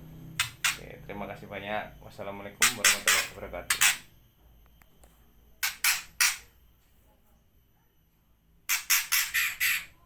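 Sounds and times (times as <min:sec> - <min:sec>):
bird giving harsh calls: 0:08.7 - 0:10.0.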